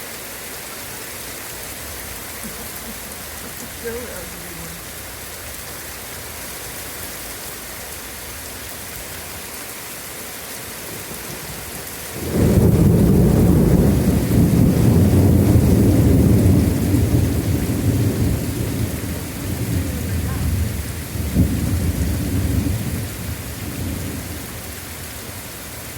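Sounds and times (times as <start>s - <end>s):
rain hiss: 0.0s - 25.9s
thunder rumbling: 11.0s - 25.4s.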